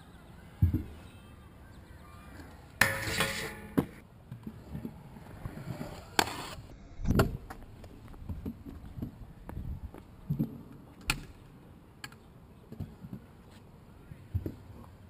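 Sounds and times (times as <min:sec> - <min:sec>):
scooter clattering on concrete: 0:02.8 - 0:04.0
scooter rolling scrape: 0:02.8 - 0:06.8.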